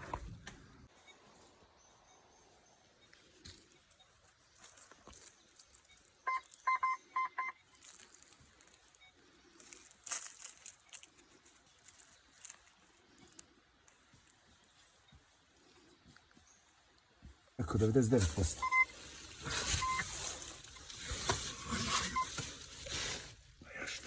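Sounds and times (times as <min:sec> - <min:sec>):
metal detector high beeps: 0:06.2 - 0:07.8, 0:18.6 - 0:18.9, 0:19.8 - 0:20.2, 0:21.7 - 0:22.4
scraping and rustling: 0:07.8 - 0:14.4, 0:18.2 - 0:24.0.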